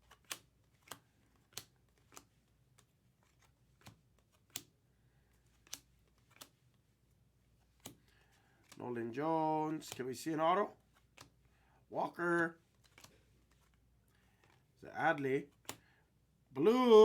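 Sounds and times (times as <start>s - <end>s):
cards flicking: 0.0s - 6.8s, 7.5s - 8.8s, 9.7s - 11.6s, 12.3s - 14.8s, 15.4s - 15.9s.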